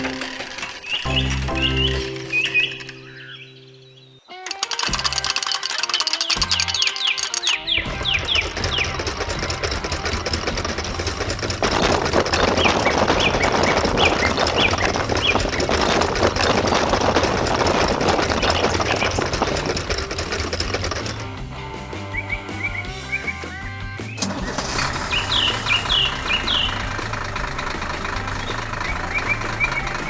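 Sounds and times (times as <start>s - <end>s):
fast mechanical rattle: 0.0s - 3.1s, 4.4s - 22.7s, 24.2s - 30.0s
short falling chirps: 0.0s - 9.4s
background music with bass beat: 19.2s - 30.0s.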